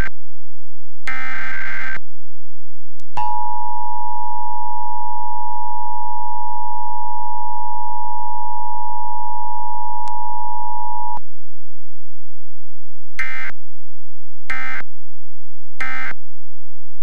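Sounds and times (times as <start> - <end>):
two-tone alert signal: 3.2 - 11.2.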